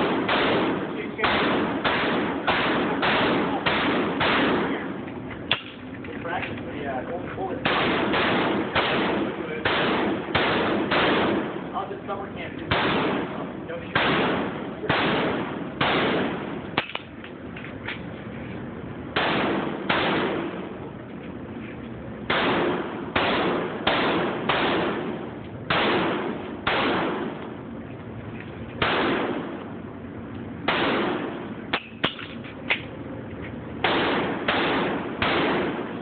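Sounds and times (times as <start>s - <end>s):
pistol shots with echo: 0.0s - 5.9s, 7.4s - 11.9s, 12.7s - 17.2s, 19.1s - 20.8s, 22.2s - 27.6s, 28.8s - 29.8s, 30.6s - 32.8s, 33.8s - 36.0s.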